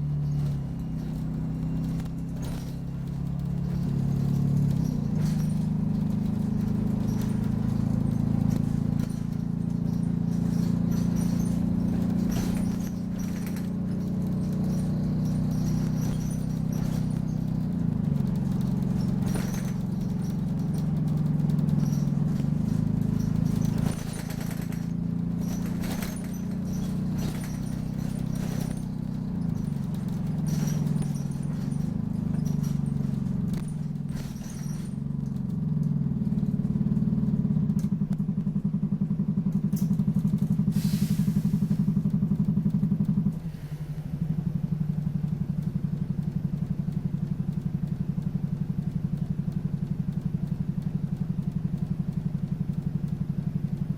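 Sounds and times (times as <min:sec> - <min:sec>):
bodywork rattles and squeaks: 0:00.0 - 0:53.9
bus engine revving: 0:00.0 - 0:53.9
short air hiss: 0:40.7 - 0:41.8.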